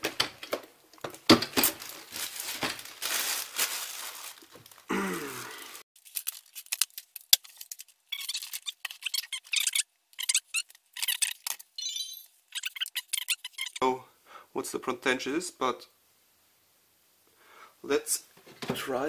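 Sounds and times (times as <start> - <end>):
rustling and crinkling: 0.0 - 4.9.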